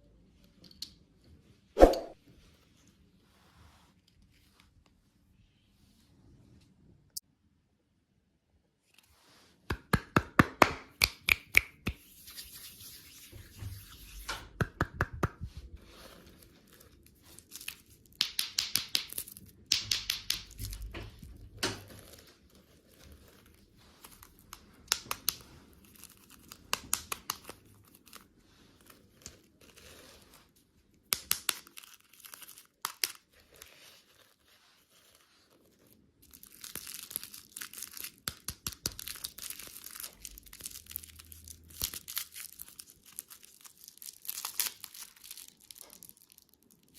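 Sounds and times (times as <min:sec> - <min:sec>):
plastic wrappers crinkling: 0:20.4 - 0:30.5, 0:31.2 - 0:46.9.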